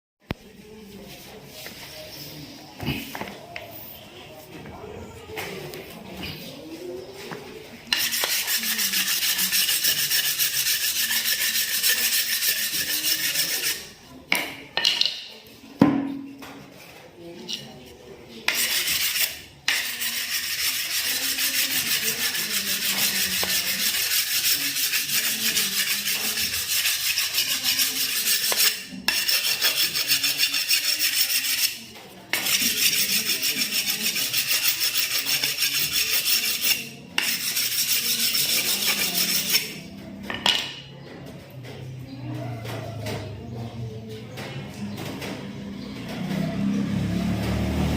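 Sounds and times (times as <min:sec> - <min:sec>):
abrasive hand tool rasping: 0:08.0 - 0:13.9, 0:18.5 - 0:39.8.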